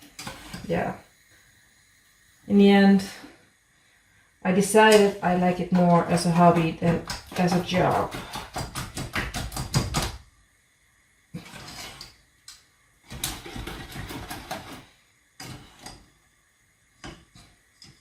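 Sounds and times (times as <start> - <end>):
hand whisk beating in bowl: 6.1 - 10.2.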